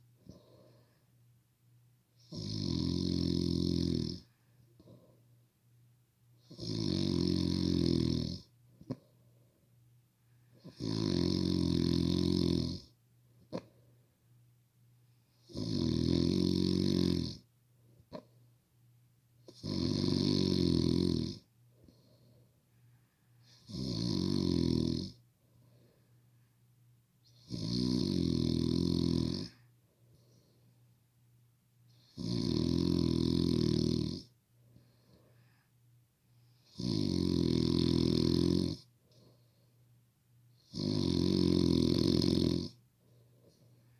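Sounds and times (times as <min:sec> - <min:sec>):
heavy loud snoring: 0:02.2 - 0:04.3, 0:06.5 - 0:08.5, 0:10.7 - 0:12.9, 0:15.5 - 0:17.4, 0:19.5 - 0:21.4, 0:23.5 - 0:25.2, 0:27.4 - 0:29.6, 0:32.0 - 0:34.3, 0:36.7 - 0:38.8, 0:40.6 - 0:42.8.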